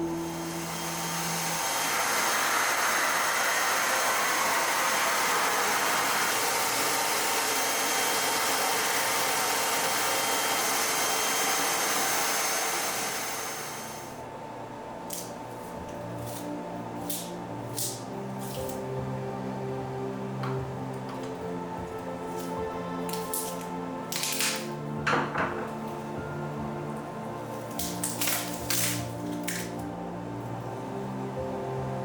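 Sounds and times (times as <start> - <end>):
rushing hissing machine noise: 0.2 - 8.3.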